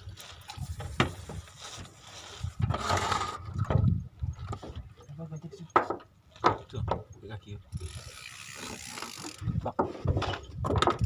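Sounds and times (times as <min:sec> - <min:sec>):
fishing reel winding: 0:07.7 - 0:09.5.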